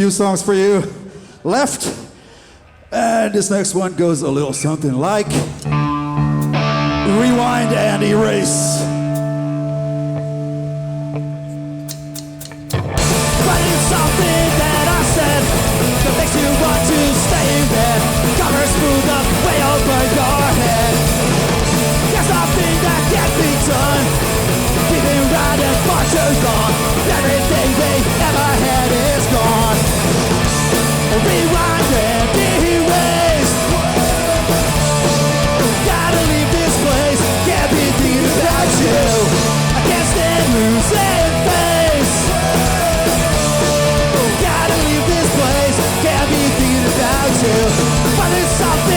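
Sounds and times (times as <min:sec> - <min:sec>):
punk band playing live: 0:05.6 - 0:48.9.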